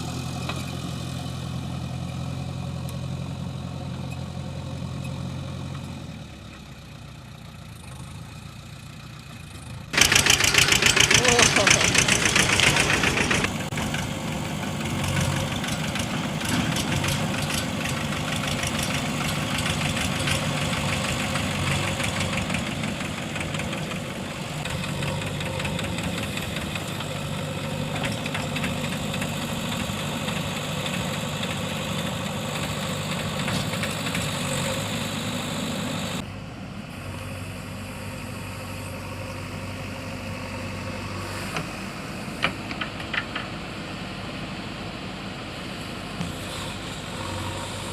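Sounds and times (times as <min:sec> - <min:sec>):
diesel engine clattering: 0:00.0 - 0:36.2.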